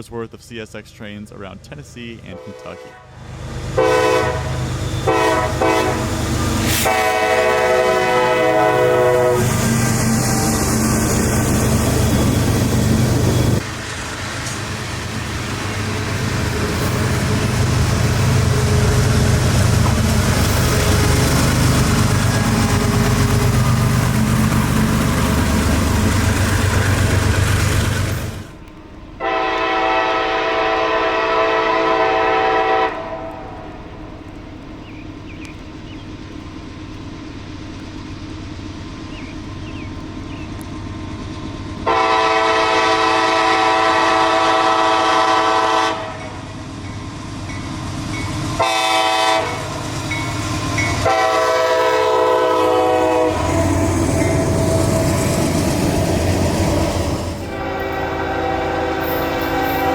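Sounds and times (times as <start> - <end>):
locomotive air horn: 2.3 - 3.2, 3.8 - 9.6, 29.2 - 33.6, 41.8 - 46.4, 48.6 - 49.7, 51.0 - 55.4, 57.4 - 59.9.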